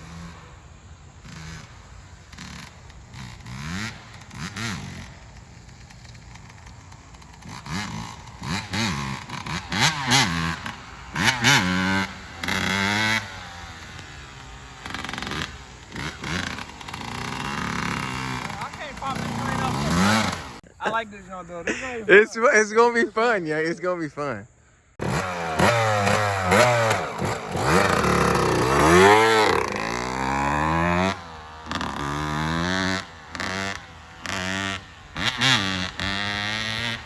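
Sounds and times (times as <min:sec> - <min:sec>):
dirt bike engine revving: 0:00.0 - 0:23.8, 0:24.9 - 0:37.0.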